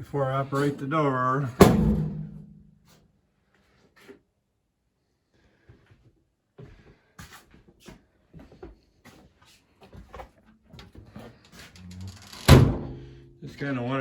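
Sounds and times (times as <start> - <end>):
loud sharp thump: 1.6 - 2.6.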